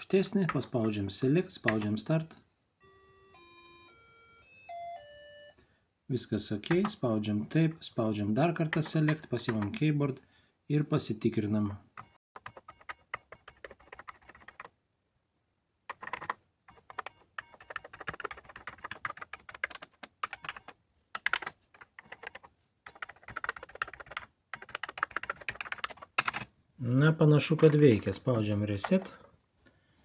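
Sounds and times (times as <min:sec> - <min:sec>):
keyboard keys clicking: 0:01.6 - 0:02.0, 0:06.6 - 0:07.0, 0:12.0 - 0:14.7, 0:15.9 - 0:26.5.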